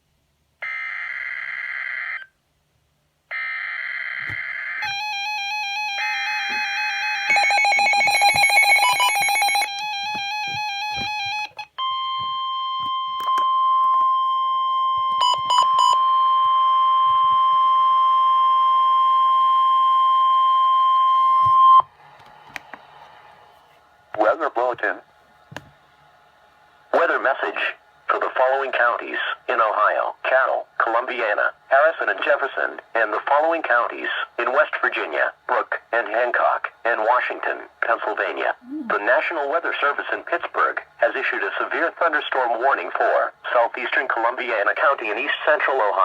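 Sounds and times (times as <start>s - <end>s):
warbling alarm tone: 3.3s - 21.8s
steady warning tone: 3.4s - 21.9s.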